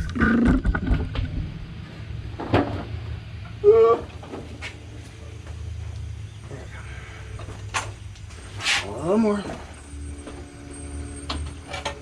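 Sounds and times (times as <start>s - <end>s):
metal parts clunking and rattling: 11.2s - 12.0s.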